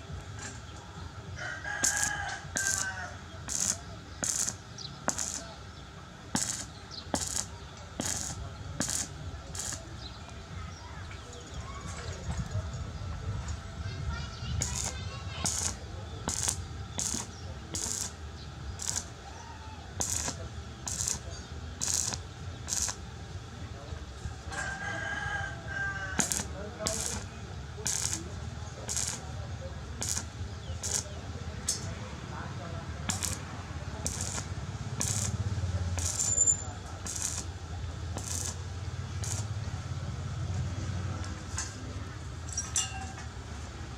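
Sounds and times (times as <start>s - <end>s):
steady low hum: 0.0s - 42.5s
arc welding crackle: 1.4s - 10.4s, 14.4s - 23.2s, 24.6s - 32.0s, 32.6s - 40.4s.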